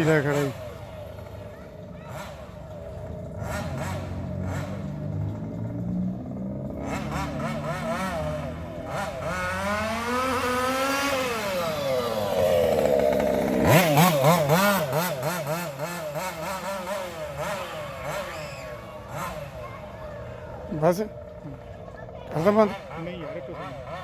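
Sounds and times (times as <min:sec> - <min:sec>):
two-stroke engine revving: 0:00.0 - 0:24.0.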